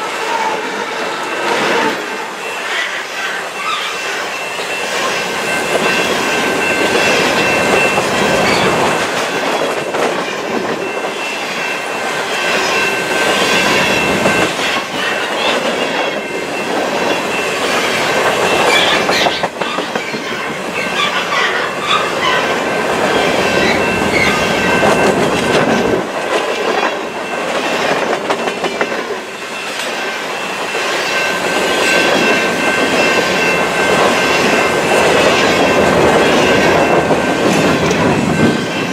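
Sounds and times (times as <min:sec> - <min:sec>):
steel wheels rumbling on rails: 0:00.0 - 0:38.9
wheels squealing: 0:17.1 - 0:25.9.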